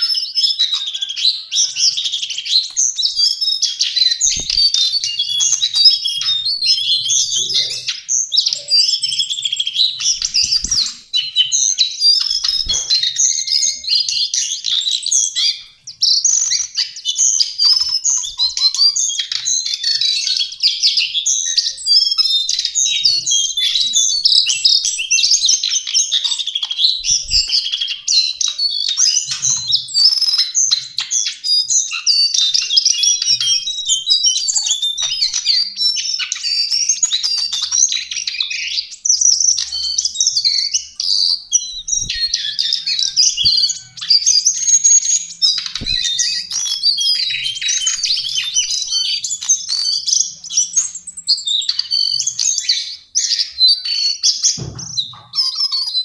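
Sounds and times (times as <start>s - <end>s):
bird singing rapid high notes: 39.6s - 54.2s.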